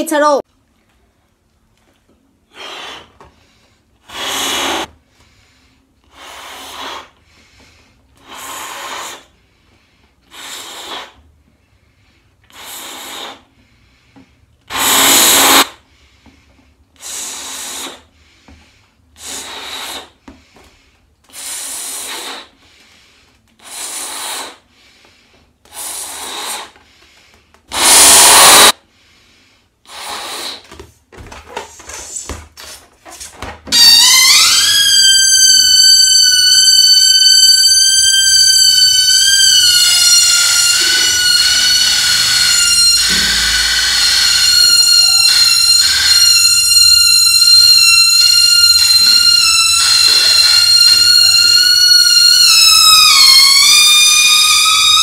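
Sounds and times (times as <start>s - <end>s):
person blowing up a balloon: 2.5s - 3.2s, 4.0s - 5.0s, 6.0s - 7.2s, 8.2s - 9.4s, 10.2s - 11.3s, 12.5s - 13.6s, 14.7s - 15.8s, 17.0s - 18.2s, 19.2s - 20.2s, 21.3s - 22.6s, 23.6s - 24.7s, 25.7s - 26.9s, 27.7s - 28.8s, 29.8s - 30.8s, 33.7s - 55.0s.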